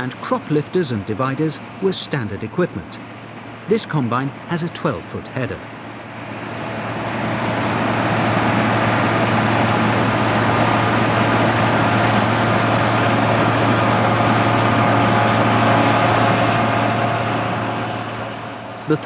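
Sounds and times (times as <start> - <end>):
combine harvester engine hum: 0.0 - 19.0.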